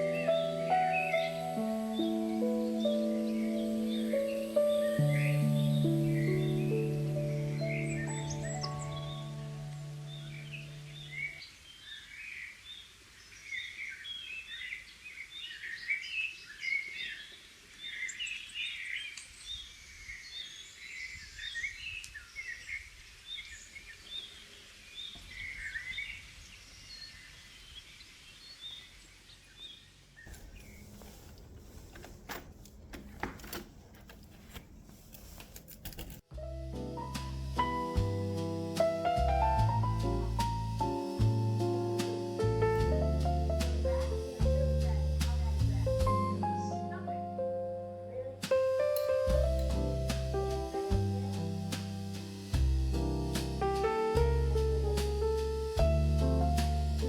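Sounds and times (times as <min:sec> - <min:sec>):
small birds chirping: 0:00.0 - 0:32.0
crackling rustling clicks: 0:30.3 - 0:36.3.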